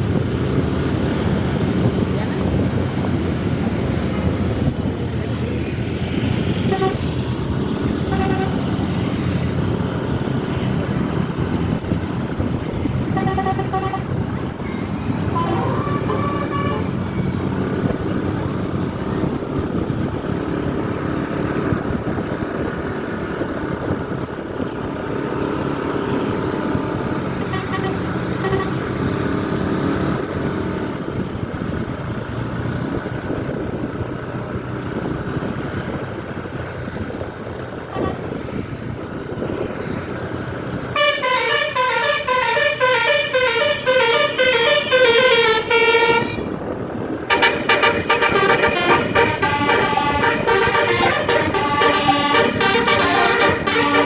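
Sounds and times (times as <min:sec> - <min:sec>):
bus engine: 0:00.0 - 0:54.0
traffic: 0:00.0 - 0:54.0
multi-tone bus horn melody: 0:06.4 - 0:09.4, 0:10.4 - 0:18.2, 0:27.3 - 0:29.3, 0:37.8 - 0:38.4, 0:40.9 - 0:54.0.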